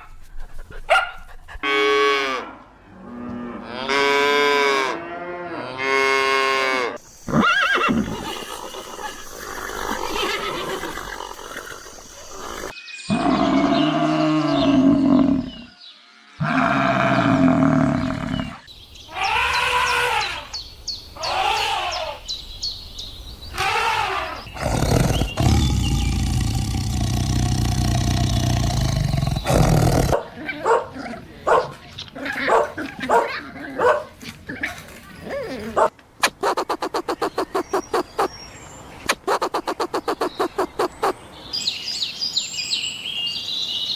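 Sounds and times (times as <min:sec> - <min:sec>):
long low noisy animal call: 0:03.6 - 0:20.6, 0:21.2 - 0:22.3, 0:23.5 - 0:30.2
fast clicking pulses: 0:36.2 - 0:38.3, 0:39.1 - 0:41.1.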